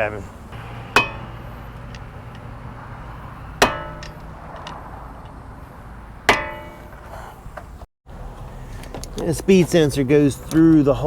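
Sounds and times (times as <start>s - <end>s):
ringing hammer strikes on metal: 0.6s - 1.6s, 3.6s - 4.3s, 6.3s - 7.0s.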